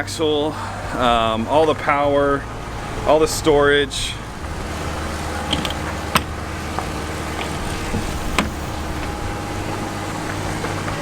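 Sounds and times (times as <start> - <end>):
motor humming: 4.2 - 11.0.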